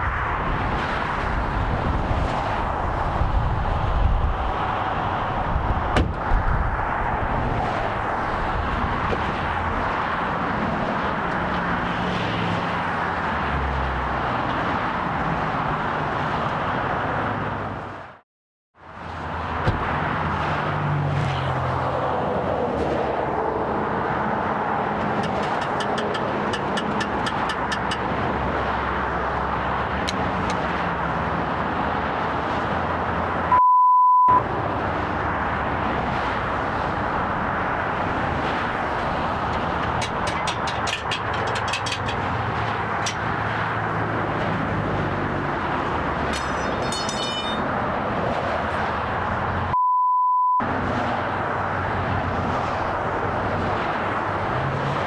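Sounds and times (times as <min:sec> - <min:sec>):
traffic noise: 0:00.0 - 0:18.2, 0:18.8 - 0:55.0
high beep tone: 0:33.5 - 0:34.4, 0:49.8 - 0:50.6.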